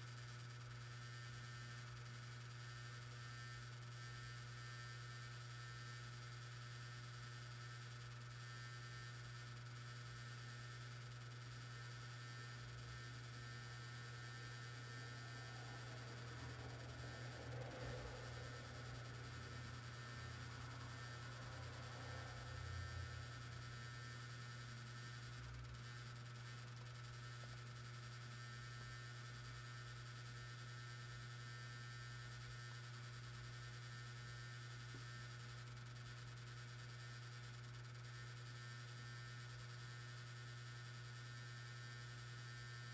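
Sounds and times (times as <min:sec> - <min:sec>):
hard disk drive humming: 0:00.0 - 0:42.9
faint high whine: 0:13.2 - 0:25.2.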